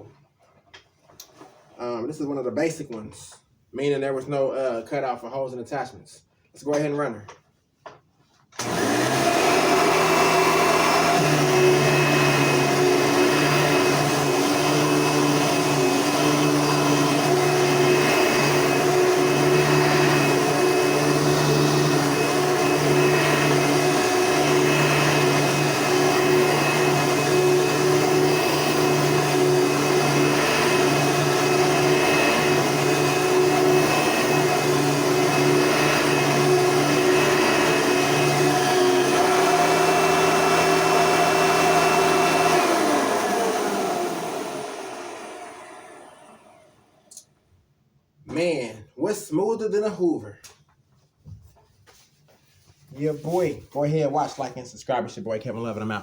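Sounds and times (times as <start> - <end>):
vacuum cleaner running: 8.6 - 47.2.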